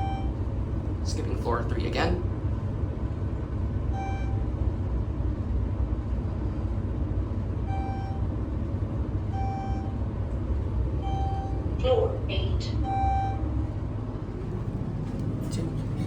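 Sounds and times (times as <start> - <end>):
elevator low rumble: 0.0 - 16.0
short electronic beeps: 9.3 - 10.0.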